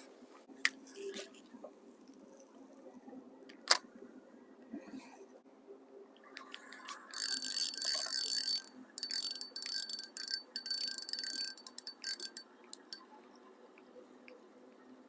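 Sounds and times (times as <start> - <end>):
fishing reel whirring: 6.4 - 13.0
fishing reel clicks: 6.4 - 13.1.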